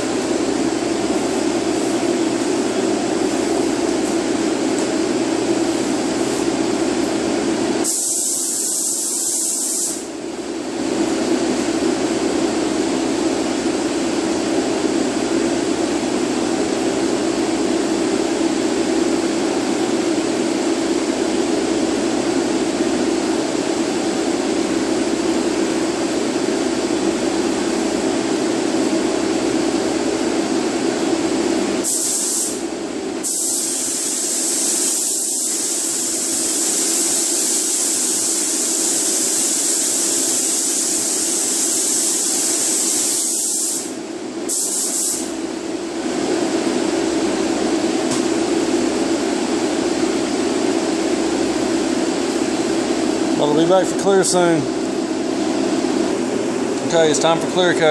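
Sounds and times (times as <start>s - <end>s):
loud high hiss: 7.8s - 10.1s, 31.8s - 32.6s, 33.2s - 43.9s, 44.5s - 45.3s
spray gun air rushing: 7.8s - 10.1s, 31.8s - 32.6s, 33.2s - 45.3s.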